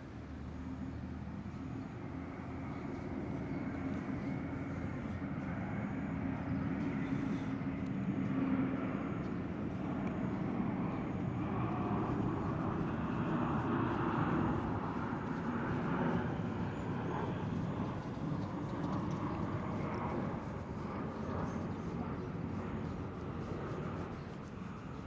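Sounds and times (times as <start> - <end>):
cat breathing low rumble: 6.7 - 8.4.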